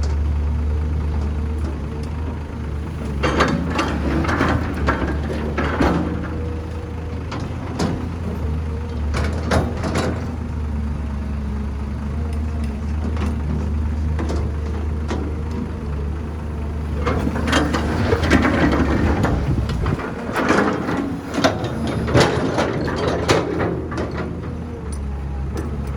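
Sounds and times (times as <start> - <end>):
diesel engine drone: 0.0 - 25.9
metal clanks and knocks: 1.0 - 10.6, 12.6 - 25.9.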